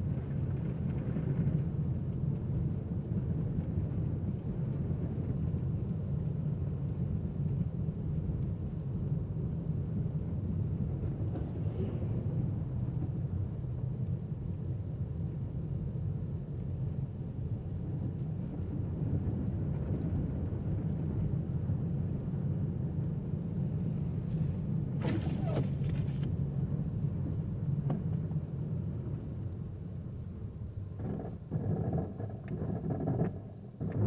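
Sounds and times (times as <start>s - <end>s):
car engine and tyre rumble: 0.0s - 34.0s
brief hiss: 24.1s - 26.3s.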